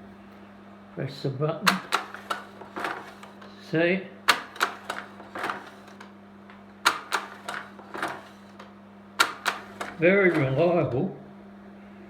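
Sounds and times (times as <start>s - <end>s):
projector hum: 0.0s - 12.0s
slide changer clicks and clacks: 1.6s - 3.5s, 4.3s - 11.0s.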